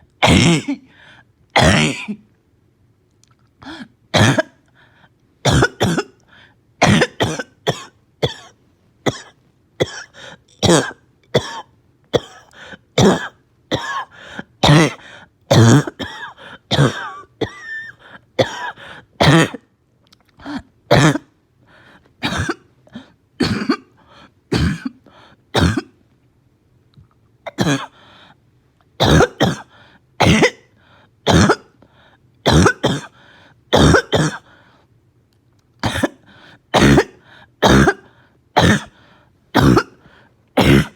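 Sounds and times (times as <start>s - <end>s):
person barking cough: 0.2s - 0.9s, 1.6s - 2.2s, 4.1s - 4.6s, 5.4s - 6.2s, 6.8s - 8.5s, 9.1s - 19.6s, 20.4s - 21.3s, 22.2s - 25.9s, 27.5s - 28.0s, 29.0s - 31.7s, 32.5s - 34.5s, 35.8s - 40.0s, 40.6s - 40.9s.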